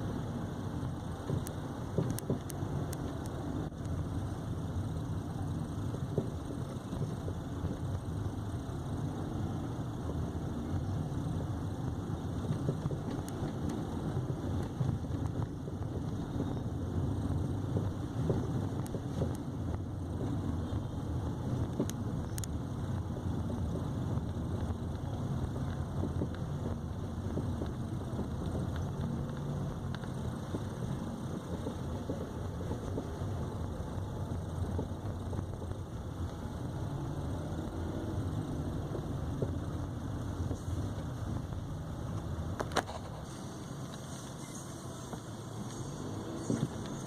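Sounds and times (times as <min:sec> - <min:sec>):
car road rumble: 0:00.0 - 0:47.0.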